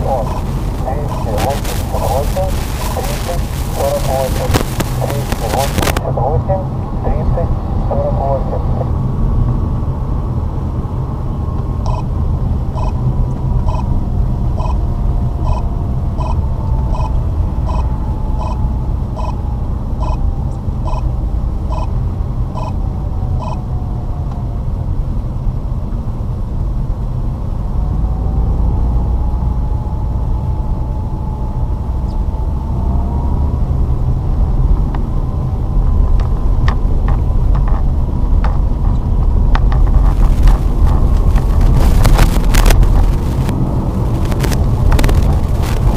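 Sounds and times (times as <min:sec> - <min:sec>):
rising whine: 0:00.0 - 0:06.0, 0:38.8 - 0:45.9
car engine and road noise: 0:00.0 - 0:45.9
sharp clicks: 0:00.1 - 0:06.0, 0:39.6 - 0:45.9.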